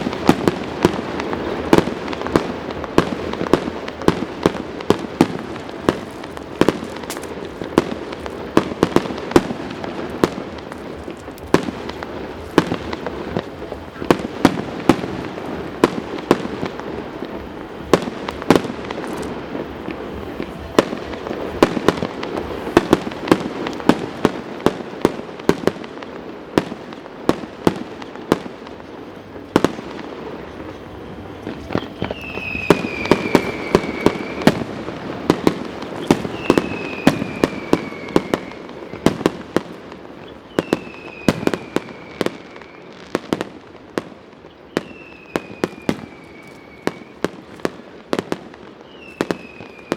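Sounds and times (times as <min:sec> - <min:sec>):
fireworks bangs and pops: 0:00.0 - 0:49.9
falling firework whistle: 0:29.6 - 0:49.9.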